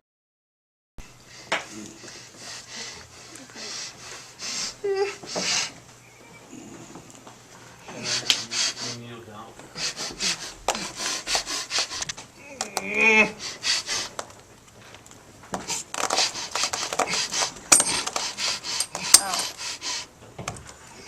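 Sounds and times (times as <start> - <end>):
person rasping breaths: 1.2 - 5.8, 7.9 - 9.0, 9.7 - 14.2, 15.6 - 20.1
person groaning: 12.4 - 13.4, 19.0 - 19.6
high metallic clinks: 16.6 - 19.6.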